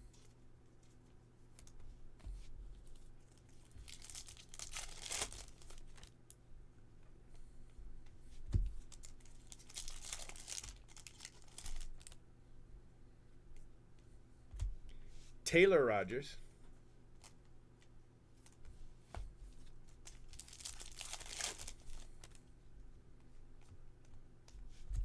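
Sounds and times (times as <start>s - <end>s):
foil wrappers tearing and crinkling: 3.6s - 6.2s, 8.8s - 12.2s, 20.0s - 22.4s.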